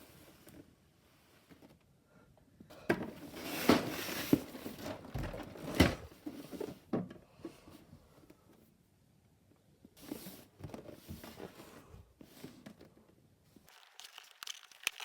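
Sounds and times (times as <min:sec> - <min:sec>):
packaging rustling: 0:13.7 - 0:15.0.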